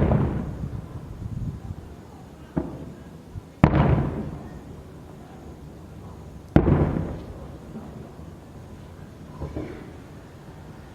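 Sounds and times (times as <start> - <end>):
firework shells bursting: 0.0 - 1.1, 2.4 - 8.5.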